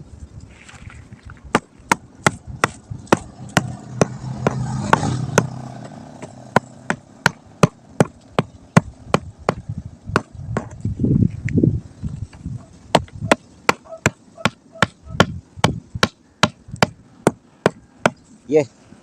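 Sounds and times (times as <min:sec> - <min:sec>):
sharp knocks: 0:01.5 - 0:10.8.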